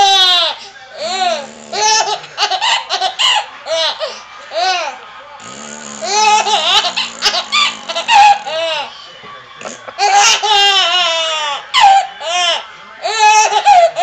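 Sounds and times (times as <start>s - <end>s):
baby laughing: 0.0s - 4.9s, 5.5s - 8.9s, 9.6s - 14.0s
man making fake fart noises: 1.3s - 2.2s, 5.4s - 8.6s, 9.6s - 9.9s.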